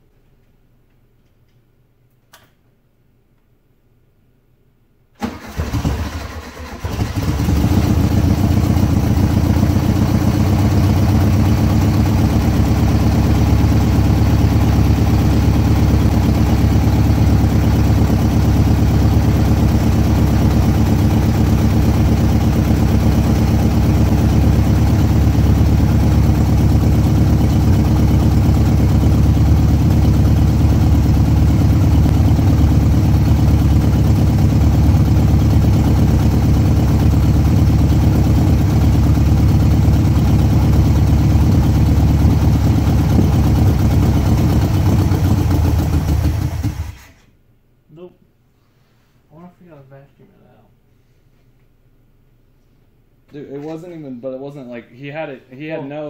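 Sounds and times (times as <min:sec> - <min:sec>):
car engine cranking and starting: 0:05.2 - 0:36.6, 0:40.4 - 0:47.3.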